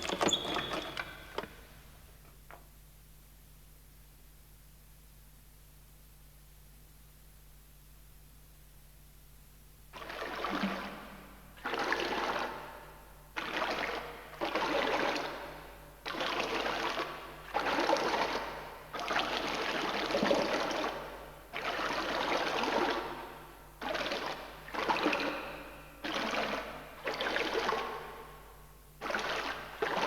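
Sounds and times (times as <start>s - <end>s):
liquid splashing into water: 10.0s - 12.8s, 13.4s - 28.4s.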